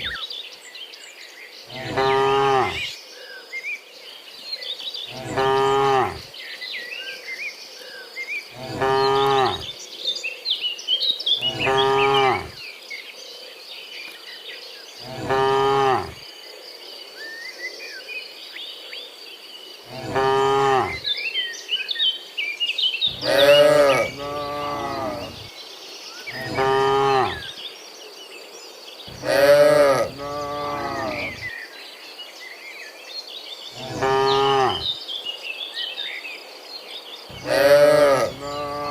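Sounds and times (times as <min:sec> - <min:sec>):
cattle mooing: 0:01.7 - 0:02.8, 0:05.2 - 0:06.3, 0:08.6 - 0:09.7, 0:11.4 - 0:12.6, 0:15.0 - 0:16.2, 0:19.9 - 0:21.0, 0:23.1 - 0:25.5, 0:26.4 - 0:27.4, 0:29.1 - 0:31.4, 0:33.8 - 0:34.9, 0:37.3 - 0:38.9
faint high chirping: 0:23.1 - 0:25.5, 0:29.0 - 0:31.5.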